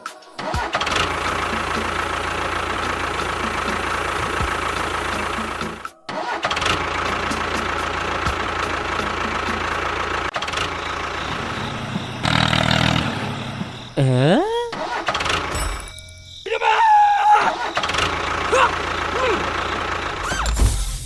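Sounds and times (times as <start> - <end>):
motor running: 0.9 - 5.9, 6.6 - 14.0, 17.9 - 20.6.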